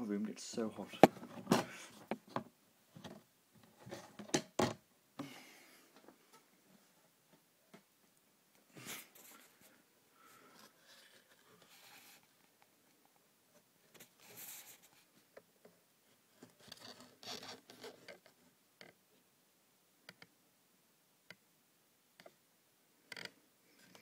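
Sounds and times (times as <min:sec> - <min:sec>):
rustling scrape: 0:10.5 - 0:12.4, 0:14.0 - 0:15.1.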